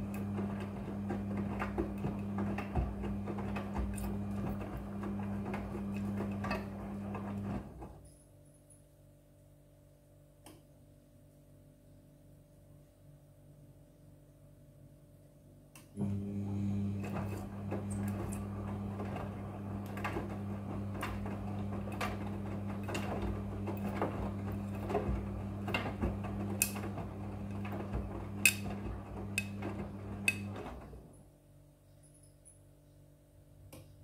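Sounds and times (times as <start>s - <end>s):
washing machine motor hum: 0.0s - 8.0s, 15.9s - 31.3s.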